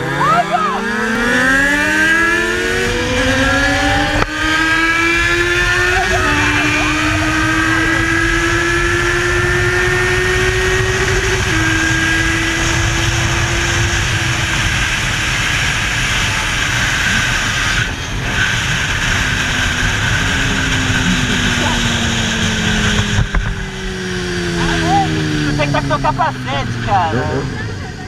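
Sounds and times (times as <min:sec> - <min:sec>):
motorcycle engine: 0:00.0 - 0:28.0
wind and road noise: 0:00.0 - 0:28.0.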